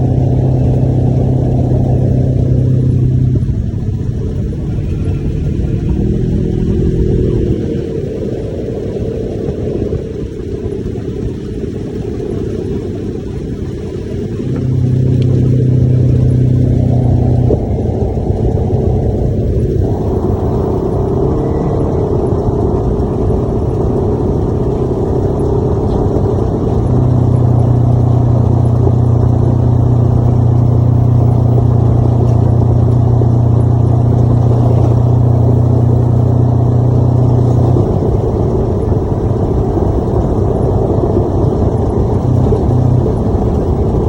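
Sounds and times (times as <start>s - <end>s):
utility vehicle engine running: 0.0s - 44.0s.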